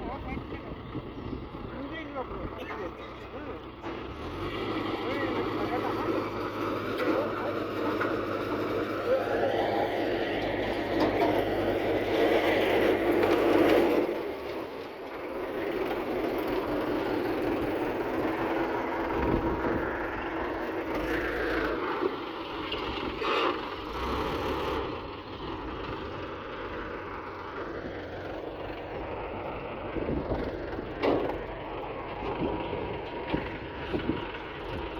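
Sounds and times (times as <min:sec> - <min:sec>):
diesel engines running: 0:00.0 - 0:34.9.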